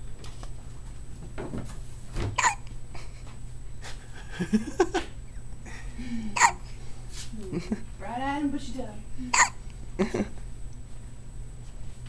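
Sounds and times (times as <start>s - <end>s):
baby hiccuping: 2.4s - 2.7s, 6.4s - 6.6s, 9.3s - 9.6s.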